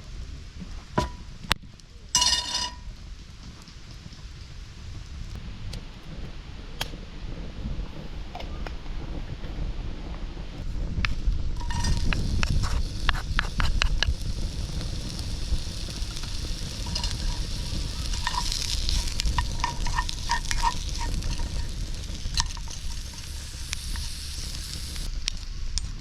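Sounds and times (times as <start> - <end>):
food sizzling in a pan: 10.9 - 26.0
metallic stirring clinks: 16.2 - 23.2.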